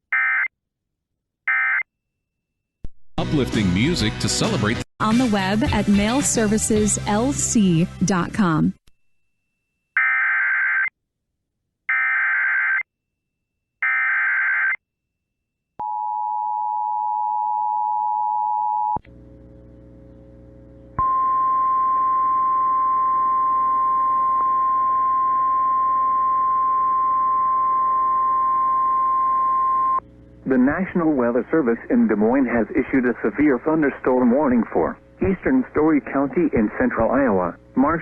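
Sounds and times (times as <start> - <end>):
radio static: 30.4 - 38.0.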